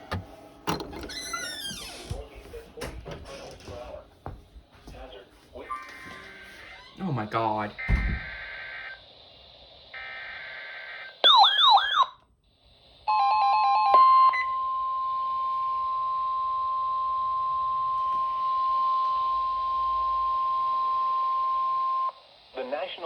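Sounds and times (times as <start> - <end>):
long steady warning tone: 2.8 - 23.0
warbling siren-like sound: 11.0 - 12.2.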